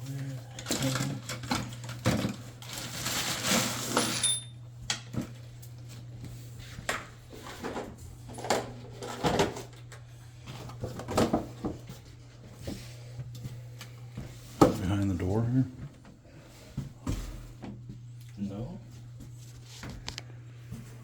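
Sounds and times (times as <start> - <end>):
objects knocking and clattering: 0.6 - 4.5, 10.6 - 12.0.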